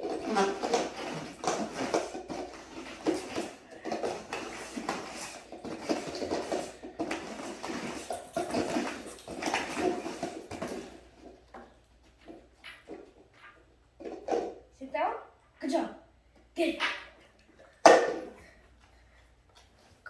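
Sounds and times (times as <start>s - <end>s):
dog nudging cups: 0.0s - 11.7s.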